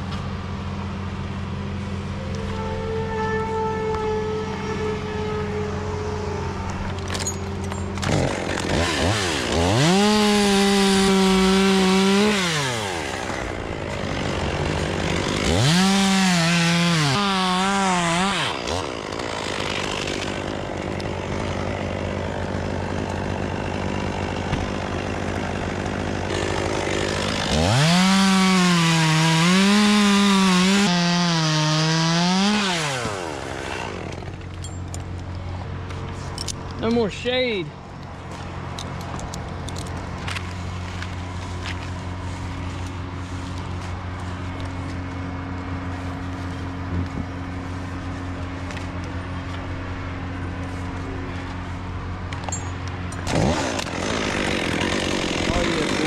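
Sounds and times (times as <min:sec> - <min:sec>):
chainsaw cutting wood: 0:07.0 - 0:34.9, 0:52.3 - 0:56.0.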